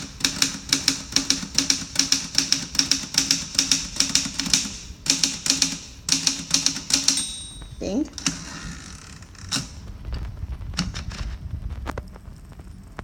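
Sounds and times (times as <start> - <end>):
typewriter key strikes: 0.0 - 8.5.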